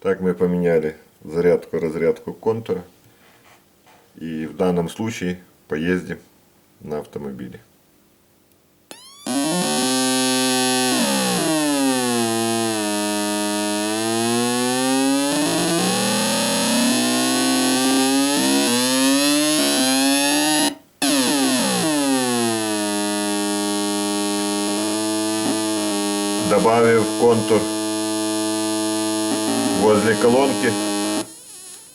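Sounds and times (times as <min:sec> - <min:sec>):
electronic buzzing through speaker: 0:08.9 - 0:31.9.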